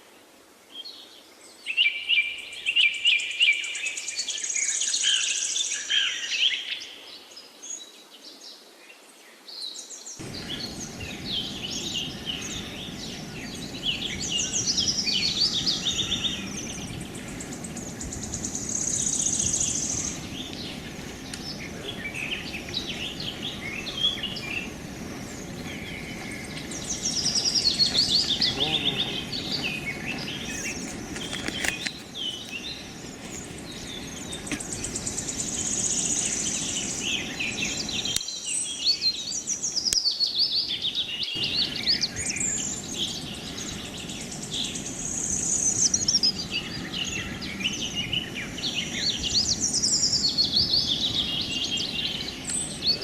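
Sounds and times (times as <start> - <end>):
birds chirping and singing: 10.0 - 53.0
steady low rushing noise: 10.2 - 31.2.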